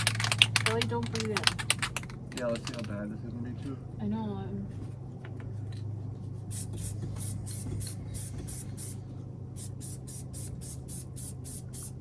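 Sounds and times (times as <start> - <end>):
steady low hum: 0.0 - 12.0
aerosol can spraying in bursts: 6.5 - 9.0, 9.6 - 12.0.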